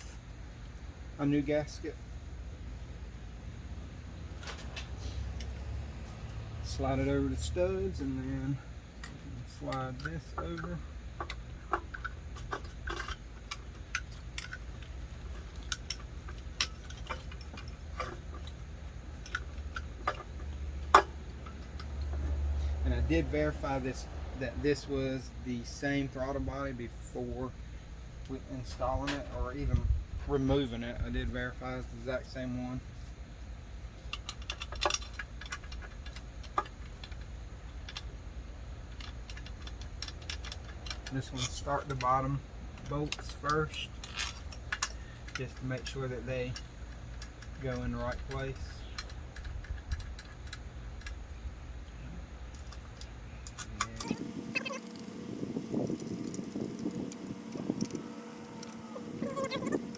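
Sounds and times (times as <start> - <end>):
steady low hum: 0.0 - 59.9
metal parts clicking and tapping: 4.4 - 24.0, 28.2 - 29.9, 34.0 - 59.9.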